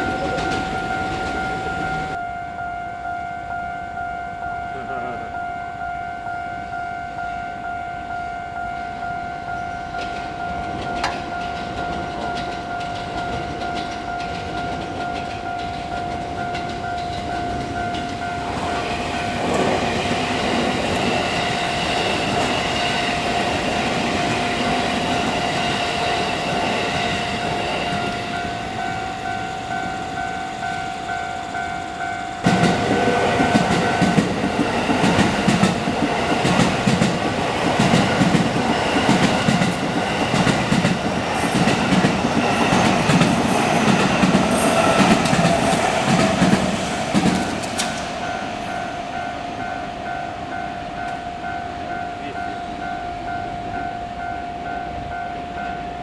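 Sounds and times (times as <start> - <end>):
train rumble: 0.0 - 2.2, 8.4 - 56.0
train wheels clattering: 0.0 - 2.2, 9.6 - 52.2
level crossing bell ringing: 0.0 - 19.1, 20.3 - 55.9.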